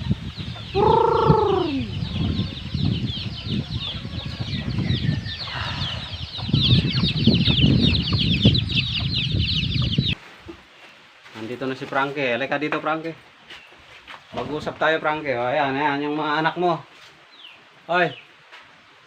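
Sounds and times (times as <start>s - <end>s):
chickens and turkeys calling: 0.0s - 11.0s.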